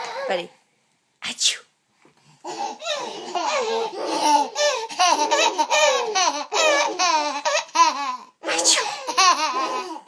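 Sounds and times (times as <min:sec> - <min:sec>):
babies laughing: 0:02.5 - 0:10.0
woman pretend sneezing: 0:08.4 - 0:09.0.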